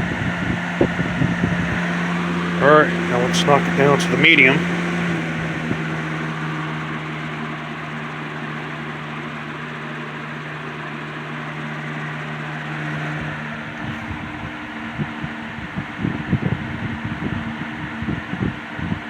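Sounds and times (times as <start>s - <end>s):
wind buffeting microphone: 0.0s - 7.4s, 13.2s - 19.0s
box fan motor hum: 0.0s - 19.0s
fan air rush: 0.0s - 19.0s.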